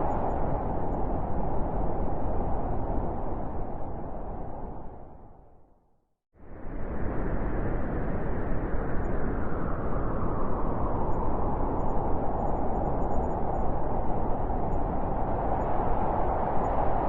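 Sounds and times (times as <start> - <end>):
blizzard wind rushing: 0.0 - 5.6, 6.4 - 17.0
wind howling: 6.6 - 17.0.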